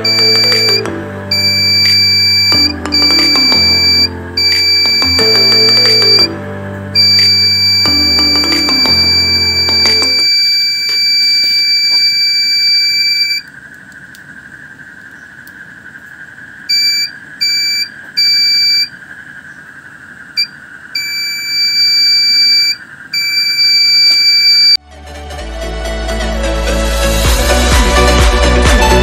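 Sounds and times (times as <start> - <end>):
alarm buzzer beeping: 0.0 - 13.5, 16.7 - 18.9, 20.3 - 24.8.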